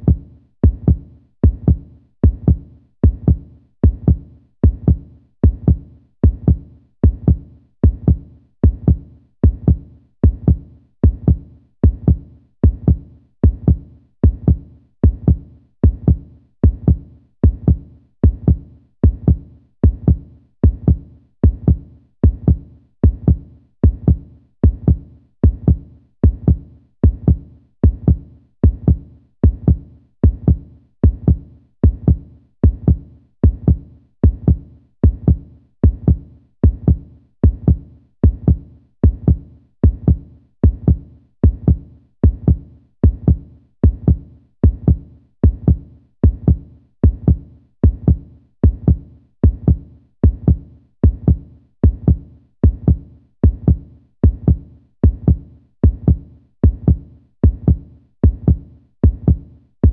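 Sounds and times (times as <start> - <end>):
heartbeat thumps: 0.0 - 59.9.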